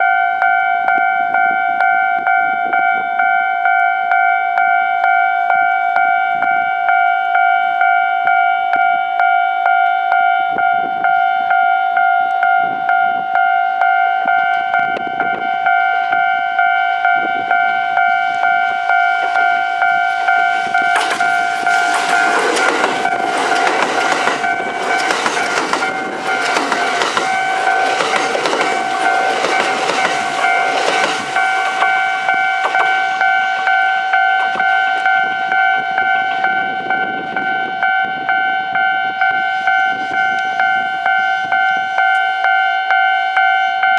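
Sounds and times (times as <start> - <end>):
level crossing bell ringing: 0.0 - 43.9
train passing: 12.4 - 43.9
wheels clattering over rail joints: 16.2 - 37.4.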